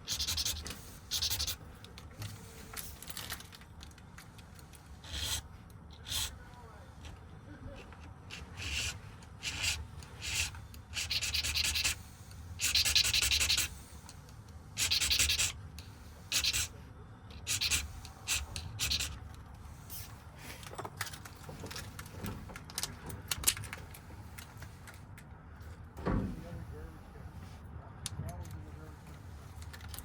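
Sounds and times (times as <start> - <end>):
lock parts rubbing and scraping: 0.0 - 6.4, 7.8 - 25.1.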